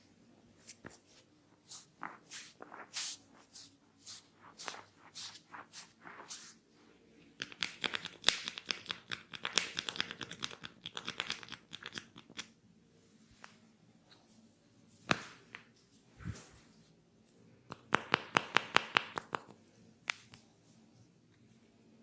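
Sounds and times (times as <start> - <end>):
hands rubbing hair: 0.6 - 6.6.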